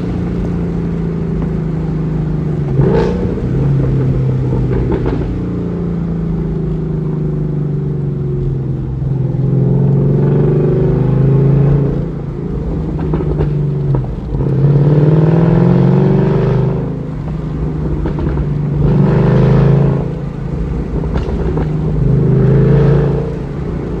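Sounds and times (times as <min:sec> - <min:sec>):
car engine revving: 0:00.0 - 0:24.0.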